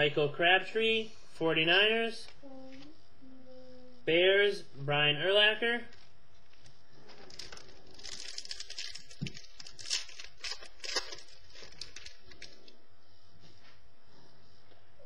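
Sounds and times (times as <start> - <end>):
trading cards rustling: 5.9 - 12.7.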